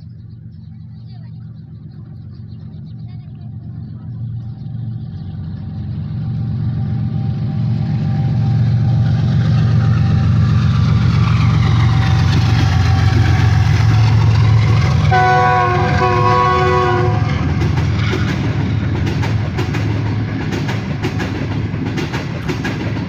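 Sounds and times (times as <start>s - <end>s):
train wheels rumbling on rail: 0.0s - 23.0s
train horn: 14.6s - 18.4s.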